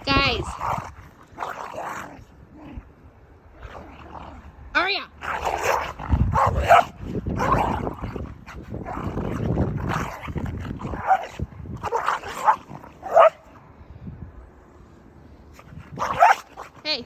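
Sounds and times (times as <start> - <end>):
dogs barking and yipping: 5.2 - 13.6, 15.7 - 16.8.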